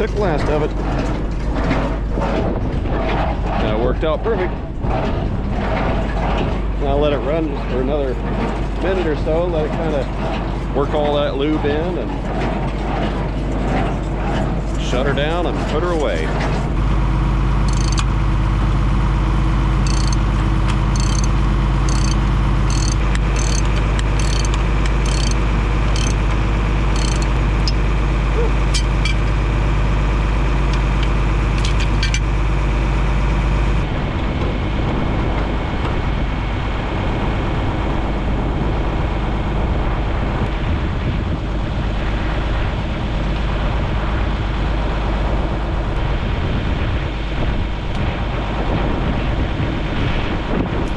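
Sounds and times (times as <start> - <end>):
wind on microphone: 0.1 - 19.2, 33.8 - 50.9
machine engine idling: 3.4 - 33.8.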